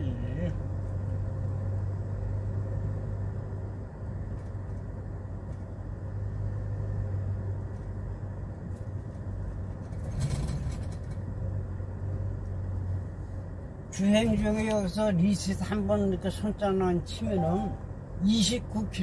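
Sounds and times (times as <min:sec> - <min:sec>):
road and tyre noise: 0:00.0 - 0:19.0
truck engine drone: 0:15.7 - 0:19.0.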